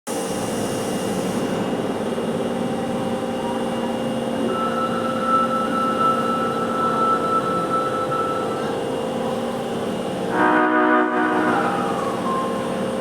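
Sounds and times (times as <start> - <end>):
subway train rumbling: 0.1 - 13.0
humming tones: 3.4 - 9.3.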